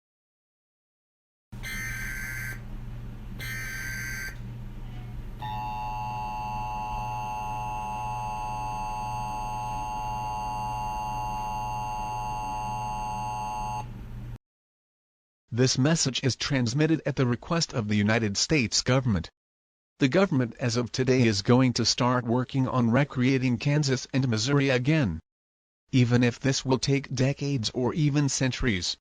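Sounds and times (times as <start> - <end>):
harsh dual-tone attention signal: 1.6 - 2.7, 3.4 - 4.4, 5.4 - 13.9
steady low hum: 1.6 - 14.4.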